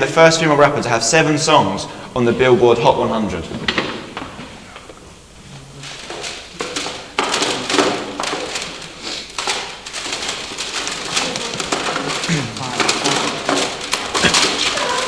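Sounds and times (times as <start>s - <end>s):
plastic cd cases clattering: 5.8s - 15.0s.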